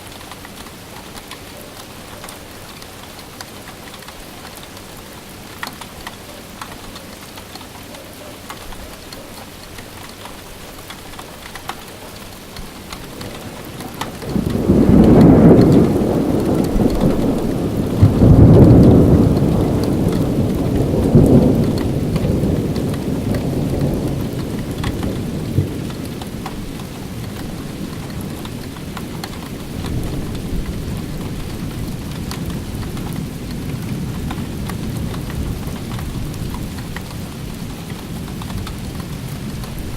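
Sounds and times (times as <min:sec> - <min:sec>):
steady rain falling: 0:00.0 - 0:39.9
thunder rumbling: 0:10.6 - 0:39.9.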